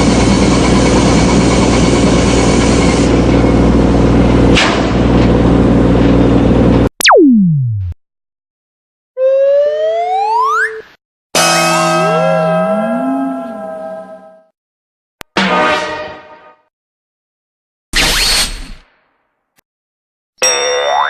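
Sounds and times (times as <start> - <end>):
falling synth glide: 7.0 - 8.0, 9.2 - 10.8
low hum: 7.0 - 8.0
rising glide over steady tone: 7.0 - 8.0.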